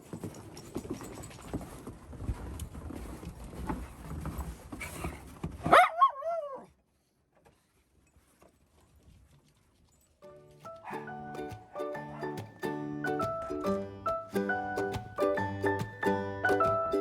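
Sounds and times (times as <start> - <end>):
dog yowling: 5.7 - 6.7, 10.8 - 12.4
tapping and scuffling: 8.3 - 17.0.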